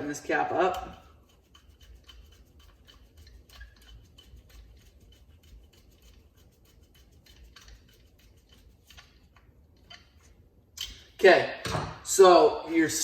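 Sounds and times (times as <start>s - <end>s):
scratchy clicks of cap screwing: 0.7s - 11.1s.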